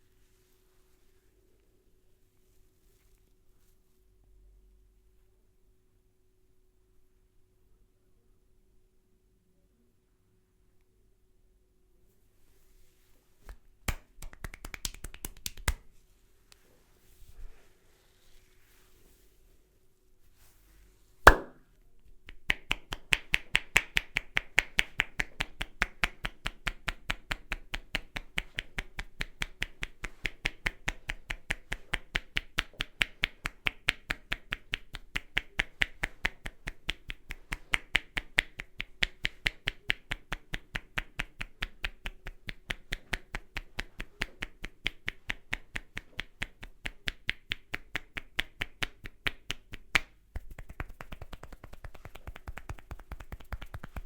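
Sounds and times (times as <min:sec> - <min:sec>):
sharp crack: 0:21.2 - 0:21.6
hand strikes on head: 0:21.3 - 0:21.6.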